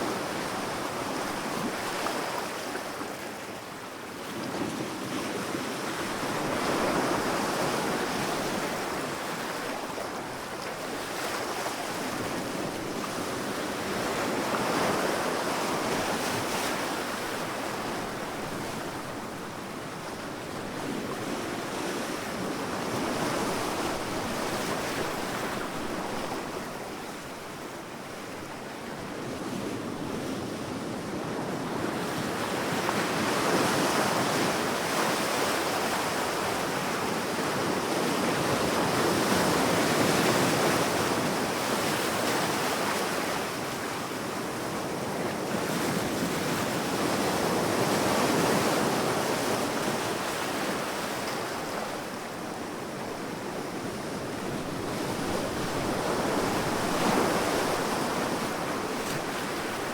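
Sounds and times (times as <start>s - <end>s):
sea waves washing onto beach: 31.7s - 59.9s.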